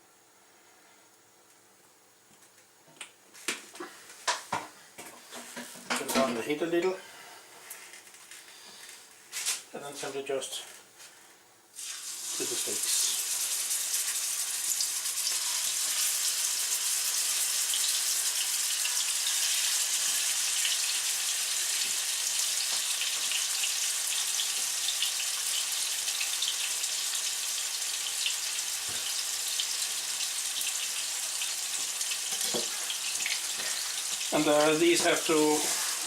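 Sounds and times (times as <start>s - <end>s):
meat sizzling in hot oil: 11.8s - 36.0s.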